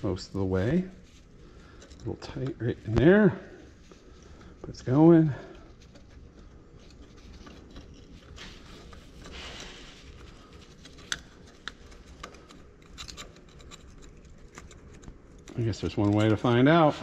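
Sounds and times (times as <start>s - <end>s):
metal scraping and rubbing: 5.8s - 15.0s.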